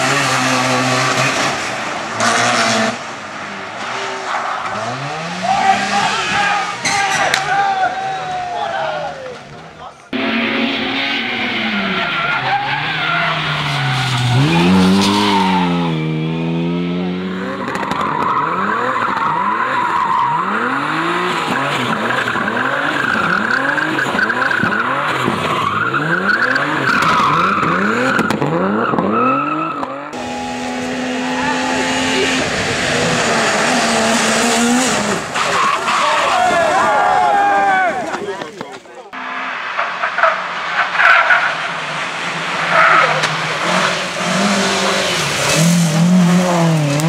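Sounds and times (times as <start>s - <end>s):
race car engines revving: 0.0s - 47.0s
tyres squealing: 34.8s - 38.8s.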